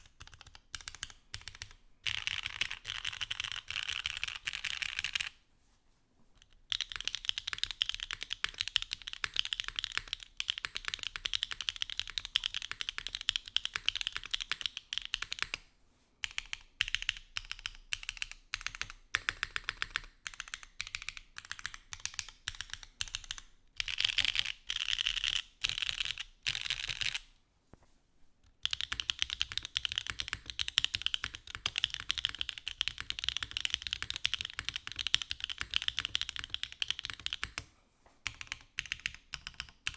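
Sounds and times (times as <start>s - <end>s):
mechanical keyboard typing: 6.7s - 15.6s, 16.2s - 27.2s, 28.6s - 37.6s, 38.2s - 39.9s.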